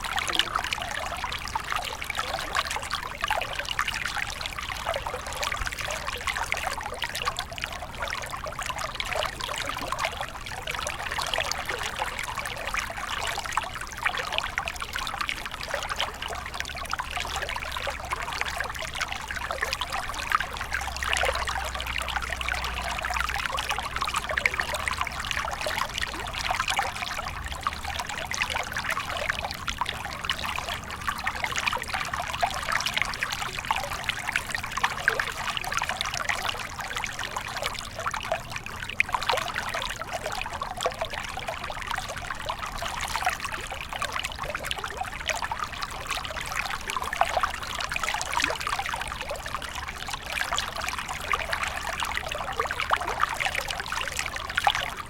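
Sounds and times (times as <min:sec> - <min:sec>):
stream flowing over stones: 0:00.0 - 0:55.0.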